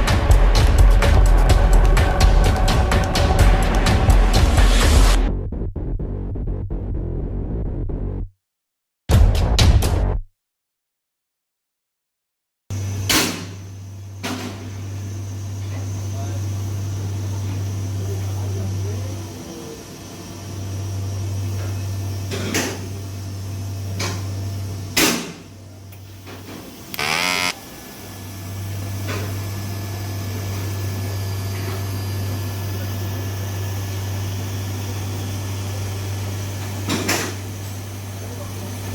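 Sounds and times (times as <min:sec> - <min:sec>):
electric buzz: 0:27.0 - 0:27.6
electrical hum: 0:27.0 - 0:27.6.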